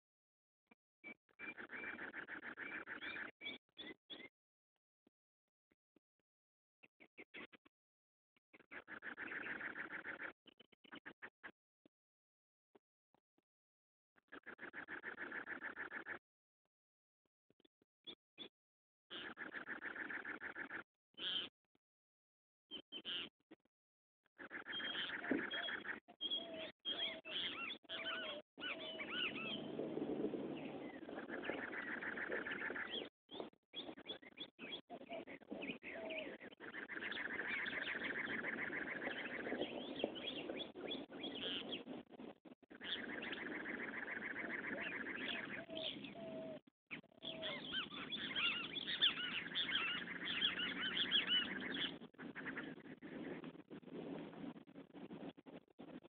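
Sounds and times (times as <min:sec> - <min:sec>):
birds chirping and trilling: 0:01.0 - 0:04.3, 0:08.6 - 0:11.2, 0:14.3 - 0:16.2, 0:19.1 - 0:21.5, 0:22.7 - 0:23.3, 0:24.4 - 0:53.9
lower bird calls: 0:01.0 - 0:04.3, 0:08.6 - 0:11.1, 0:19.1 - 0:21.5, 0:22.7 - 0:23.3, 0:24.4 - 0:29.8, 0:30.5 - 0:53.6.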